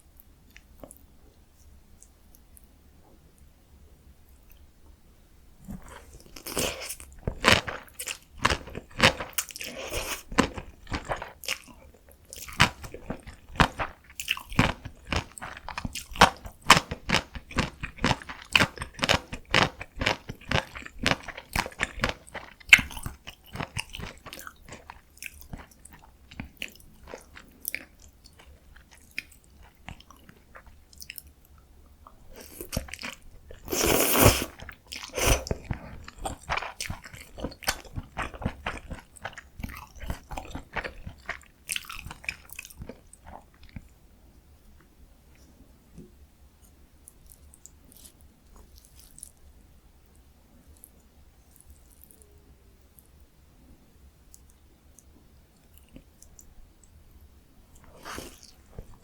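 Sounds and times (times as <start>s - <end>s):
wet chewing with mouth clicks: 5.7s - 44.0s, 47.0s - 49.5s, 50.2s - 53.1s, 57.7s - 59.0s.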